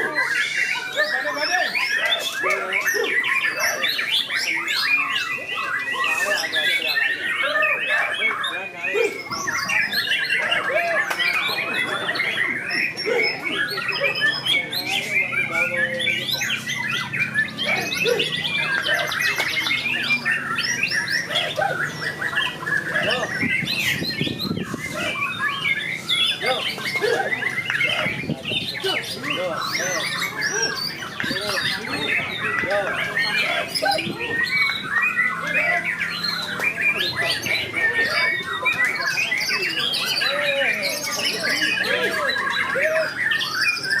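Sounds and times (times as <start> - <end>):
songbirds singing: 0.0 - 44.0.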